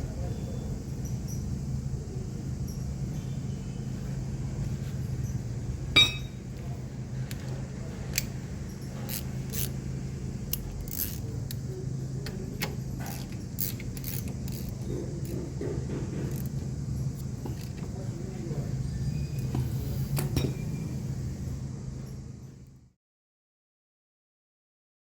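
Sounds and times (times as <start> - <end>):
steady low hum: 0.0 - 23.0
metal tools clinking: 6.0 - 6.7.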